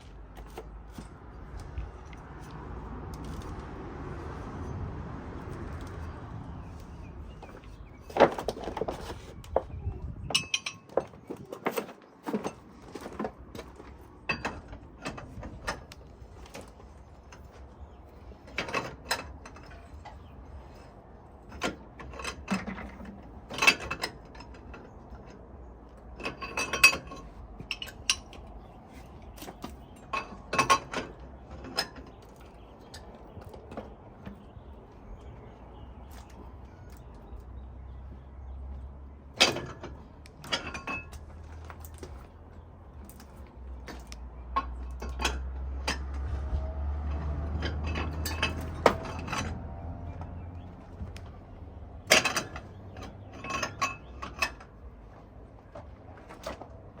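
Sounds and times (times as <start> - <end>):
metal tools clanking: 6.7 - 37.4, 39.3 - 46.4, 47.1 - 51.4, 52.0 - 55.0.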